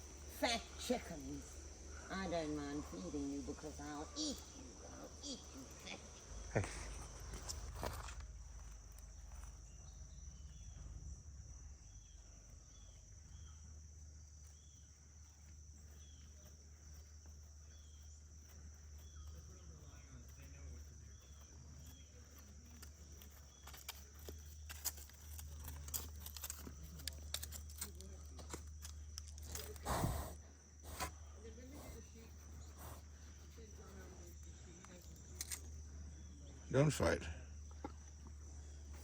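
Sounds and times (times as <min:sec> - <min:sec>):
insect drone: 0:00.0 - 0:39.0
clicks and rustles: 0:20.7 - 0:29.9.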